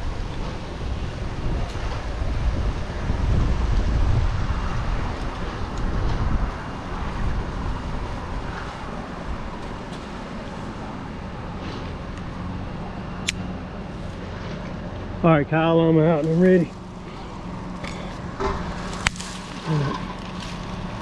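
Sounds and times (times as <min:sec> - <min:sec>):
wind buffeting microphone: 0:00.0 - 0:15.2
engine humming: 0:00.0 - 0:21.0.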